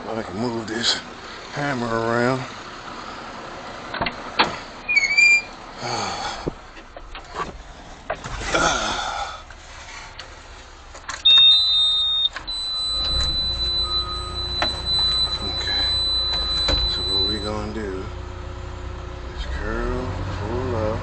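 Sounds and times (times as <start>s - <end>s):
diesel engine running: 0.0s - 21.0s
loud electronic beep: 11.2s - 17.8s
high-pitched tone: 11.3s - 17.8s.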